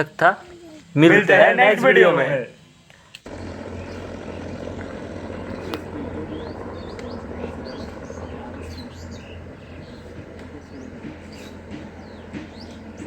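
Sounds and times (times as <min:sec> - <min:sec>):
steady low hum: 0:00.0 - 0:13.0
small birds chirping: 0:02.7 - 0:13.0.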